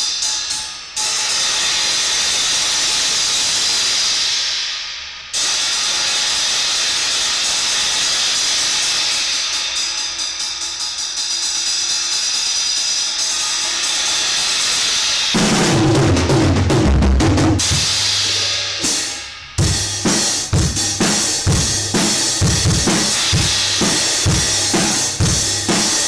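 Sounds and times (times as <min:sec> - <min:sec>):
crash cymbal wash: 0:00.0 - 0:26.0
bass drum: 0:15.4 - 0:19.0, 0:19.6 - 0:26.0.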